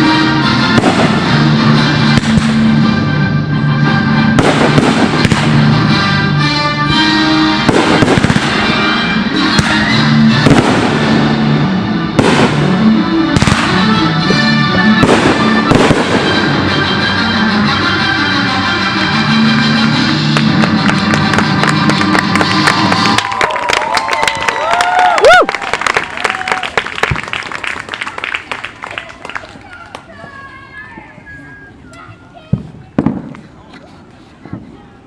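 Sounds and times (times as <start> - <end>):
fireworks bursting: 0.0 - 3.3, 4.1 - 23.4, 31.3 - 34.8
loud music: 0.0 - 23.2.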